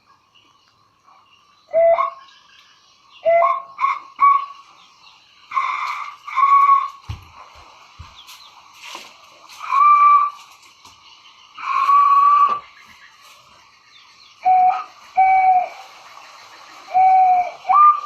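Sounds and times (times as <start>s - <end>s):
pipe bird call hooting: 1.7s - 2.3s, 3.2s - 4.8s, 5.5s - 7.1s, 9.6s - 10.5s, 11.5s - 13.0s, 14.4s - 18.0s.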